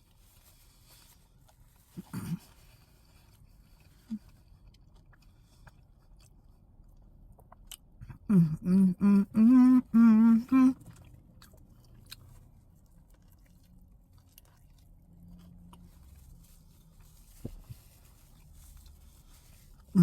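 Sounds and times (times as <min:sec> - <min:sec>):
woman humming with mouth full: 0:08.0 - 0:10.8.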